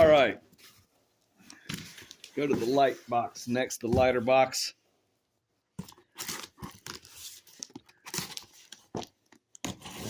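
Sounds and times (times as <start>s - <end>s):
cardboard box tearing: 9.6s - 10.0s.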